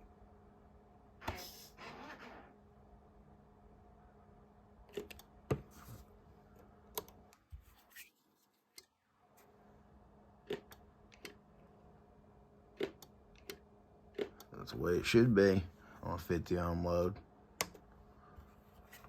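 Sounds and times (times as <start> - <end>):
faint steady hum: 0.0 - 19.0
radio switches and knobs clicking: 17.6 - 17.9.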